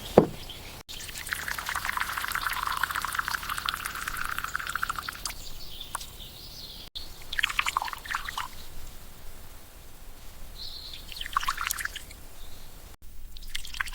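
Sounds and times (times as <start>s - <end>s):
liquid pouring and splashing: 0.9s - 5.4s, 7.4s - 8.5s, 13.4s - 13.9s.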